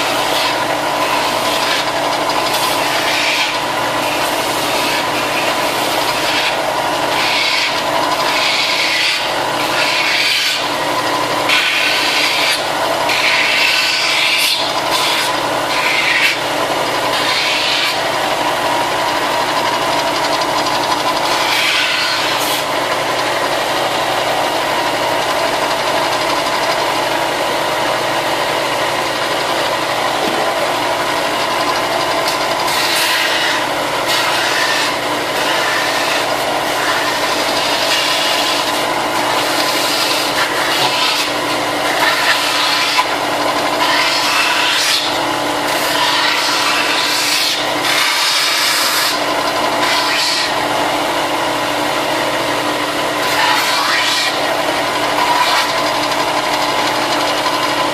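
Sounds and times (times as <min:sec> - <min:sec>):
sanding plastic strokes: 0:00.0 - 0:10.9, 0:11.5 - 0:18.1, 0:19.5 - 0:22.8, 0:31.2 - 0:50.6, 0:53.2 - 0:57.9
electric sander running: 0:00.0 - 0:57.9.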